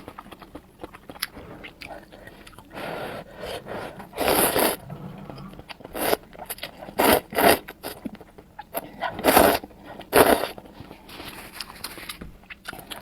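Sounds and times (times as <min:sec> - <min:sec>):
noodles being slurped: 0:01.2 - 0:08.0, 0:08.8 - 0:10.7.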